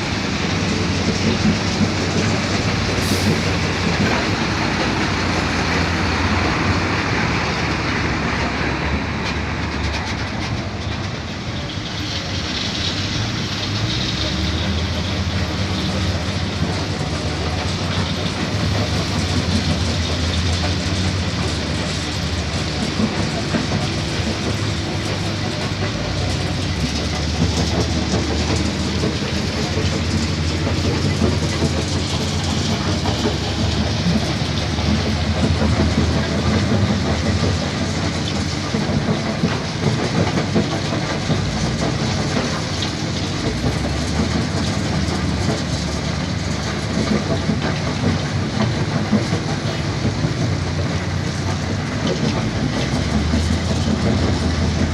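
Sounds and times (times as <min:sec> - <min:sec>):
diesel truck engine rumble: 0:00.0 - 0:54.9
rattling and knocking: 0:14.1 - 0:54.9.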